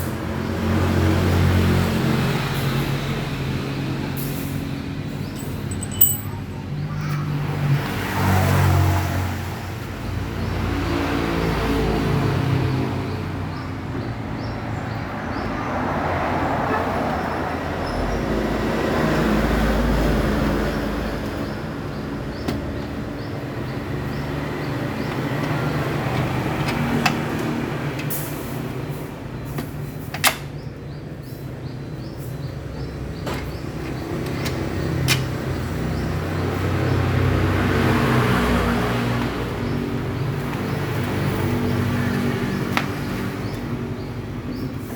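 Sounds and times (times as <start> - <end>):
vehicle engines humming: 0.0 - 44.9.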